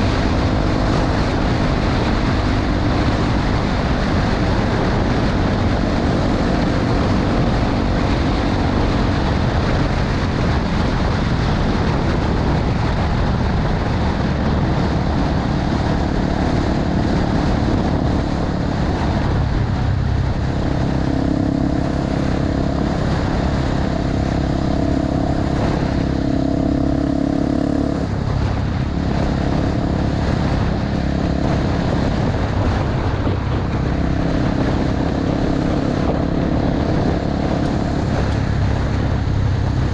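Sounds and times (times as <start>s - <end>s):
motorcycle engine cruising: 0.0s - 39.9s
road noise: 0.0s - 39.9s
wind noise: 0.0s - 39.9s.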